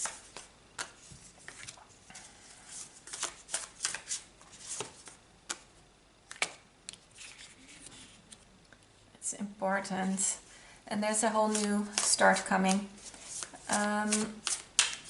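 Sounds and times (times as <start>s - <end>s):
cards flicking and snapping: 0.0s - 1.8s, 6.3s - 7.4s, 14.1s - 15.0s
cards being shuffled: 0.0s - 1.9s, 2.7s - 5.7s, 6.3s - 8.4s, 11.5s - 15.0s.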